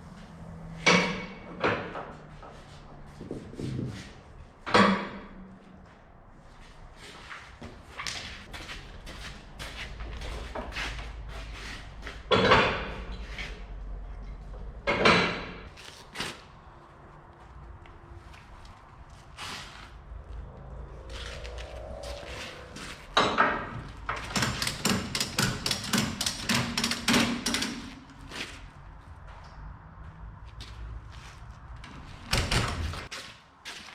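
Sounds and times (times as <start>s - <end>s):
knocks and clanks: 0.7s - 5.6s, 12.0s - 13.7s, 14.4s - 15.7s, 21.4s - 28.5s, 31.8s - 33.2s
low rumble: 17.5s - 24.5s.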